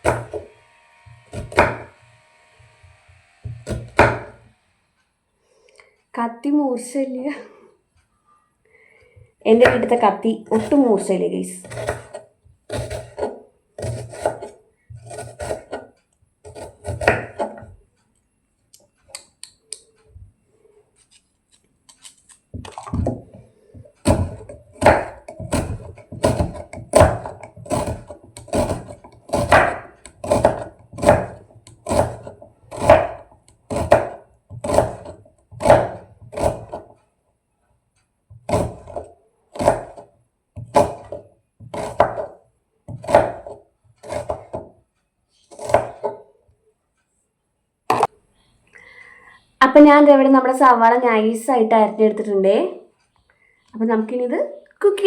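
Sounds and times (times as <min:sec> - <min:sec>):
knife chopping onion on board: 0:00.0 - 0:00.5, 0:01.1 - 0:02.0, 0:02.8 - 0:04.4, 0:09.5 - 0:11.0, 0:11.6 - 0:17.8, 0:22.6 - 0:36.9, 0:38.3 - 0:44.7, 0:45.5 - 0:46.2.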